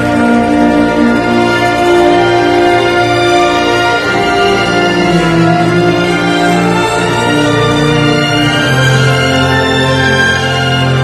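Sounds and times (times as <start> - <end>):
instrumental music with held notes: 0.0 - 11.0.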